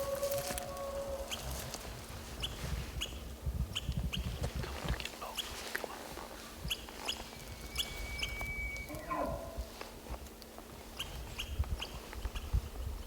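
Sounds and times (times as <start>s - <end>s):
steady high whistle: 7.6s - 9.0s.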